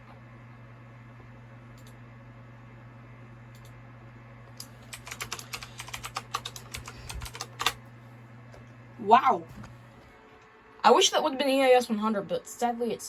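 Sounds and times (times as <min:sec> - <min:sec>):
steady low hum: 0:00.0 - 0:13.0
computer keyboard typing: 0:04.6 - 0:07.8.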